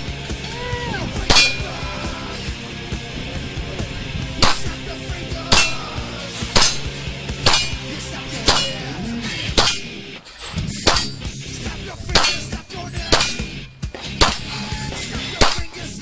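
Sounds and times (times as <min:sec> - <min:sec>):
heavy metal music: 0:00.0 - 0:16.0
metallic ring of steel target: 0:01.2 - 0:01.8, 0:04.4 - 0:04.9, 0:05.5 - 0:11.4, 0:12.1 - 0:15.9
pistol shots: 0:04.4 - 0:04.8, 0:06.5 - 0:08.9, 0:12.2 - 0:13.6, 0:14.2 - 0:14.6.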